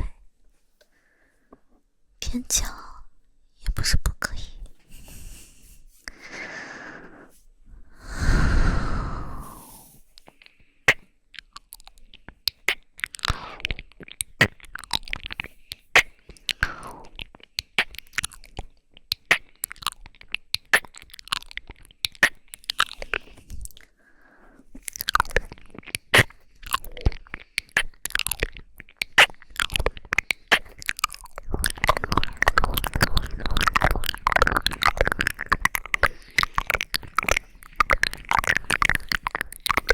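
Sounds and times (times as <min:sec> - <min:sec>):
breathy sound: 0:05.0 - 0:10.9
wet mouth clicks and smacks: 0:10.1 - 0:23.9, 0:24.7 - 0:39.9.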